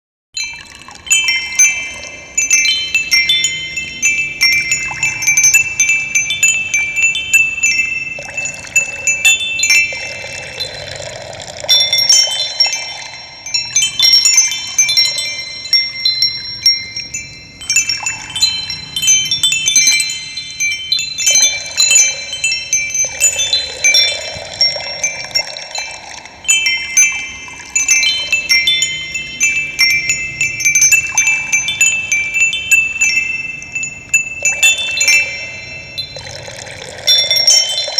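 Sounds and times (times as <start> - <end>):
wind chimes ringing: 0.4 - 37.9
running water: 8.1 - 16.0, 21.0 - 29.8, 33.8 - 37.9.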